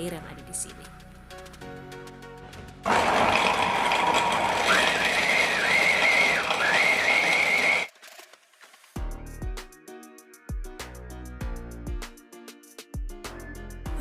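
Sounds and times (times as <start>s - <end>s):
electric blender motor grinding: 2.9s - 7.9s.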